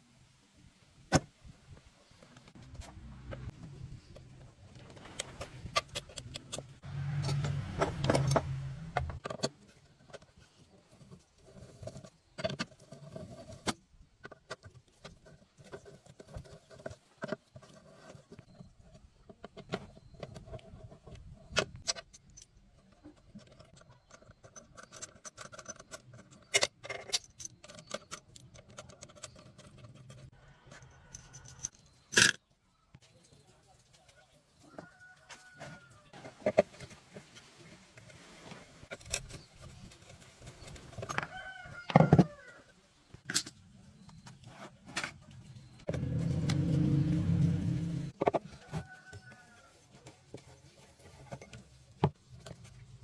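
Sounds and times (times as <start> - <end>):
low hum: 6.7 - 9.2, 45.7 - 48.2.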